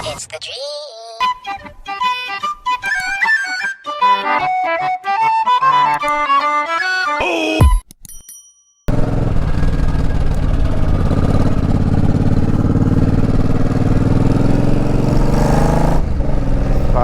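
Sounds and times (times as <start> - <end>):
motorcycle engine running: 8.9 - 17.0.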